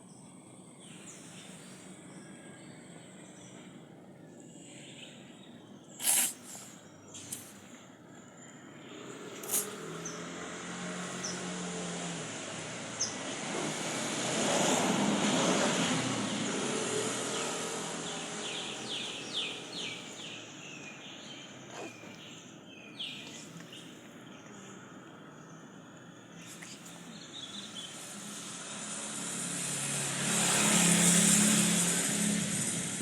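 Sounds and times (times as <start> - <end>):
vehicle passing: 8.6 - 22.4, 23.0 - 33.0.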